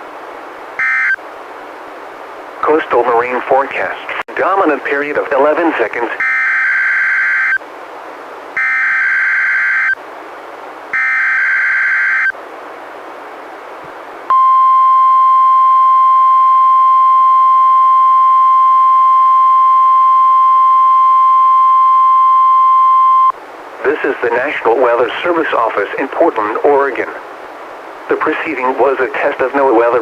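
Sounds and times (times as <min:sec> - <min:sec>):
steady warning alarm tone: 0:00.8 - 0:01.2, 0:06.2 - 0:07.6, 0:08.6 - 0:10.0, 0:11.0 - 0:12.3
radio hiss: 0:02.6 - 0:06.6, 0:23.8 - 0:27.3, 0:28.0 - 0:30.0.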